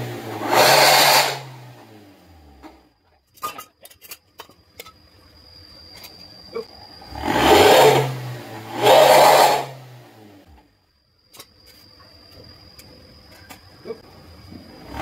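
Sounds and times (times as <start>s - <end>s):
raspy car exhaust revving: 0.0s - 2.6s, 7.0s - 10.5s, 14.6s - 15.0s.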